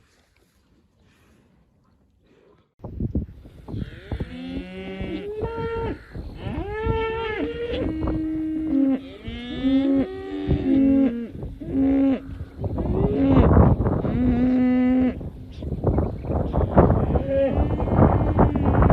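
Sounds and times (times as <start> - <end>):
cows mooing: 3.8 - 15.3, 16.4 - 18.9.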